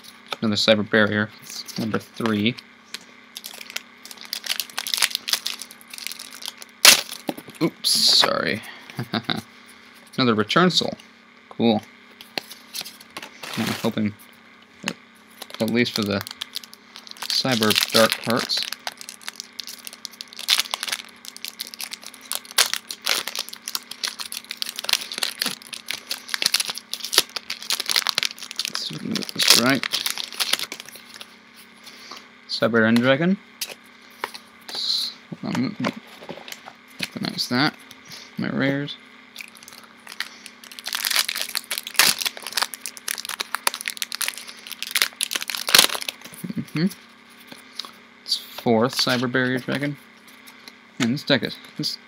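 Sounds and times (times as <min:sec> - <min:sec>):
foil wrappers crinkling: 0:02.2 - 0:07.6, 0:14.8 - 0:31.4, 0:39.4 - 0:46.6.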